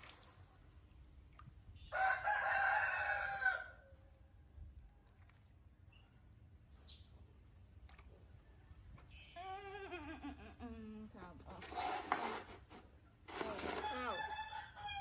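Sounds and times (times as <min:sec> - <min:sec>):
rooster crowing: 0:01.9 - 0:03.8, 0:13.8 - 0:15.0.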